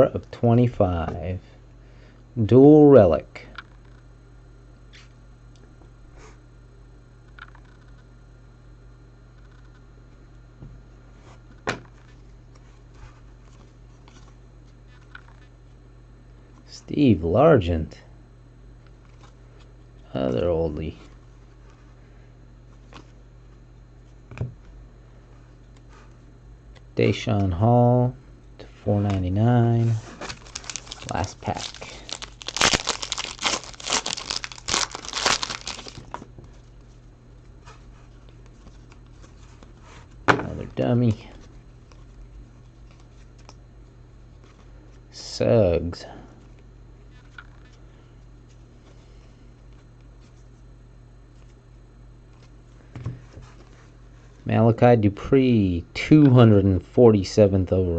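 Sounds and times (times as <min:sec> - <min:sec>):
low electrical hum: 0:00.0 - 0:57.9
wrapper tearing and crinkling: 0:30.1 - 0:36.2.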